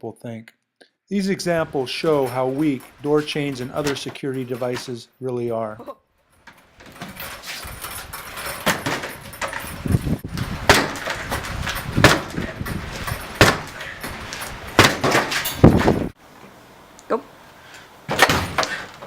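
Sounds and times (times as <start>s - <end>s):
door being forced with bangs: 6.7s - 16.2s, 18.1s - 19.0s.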